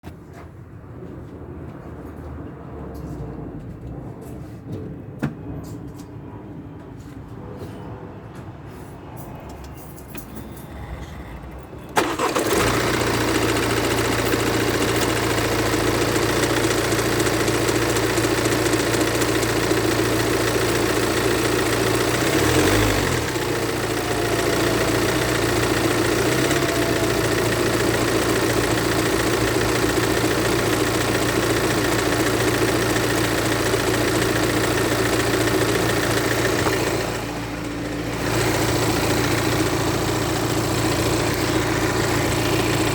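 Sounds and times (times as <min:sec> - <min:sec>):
diesel engine idling with clatter: 0:09.2 - 0:42.9
diesel engine starting: 0:10.6 - 0:42.9.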